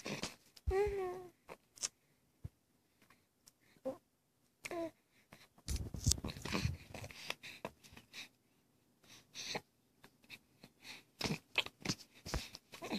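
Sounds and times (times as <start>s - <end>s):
rustling and handling noise: 5.5s - 8.2s.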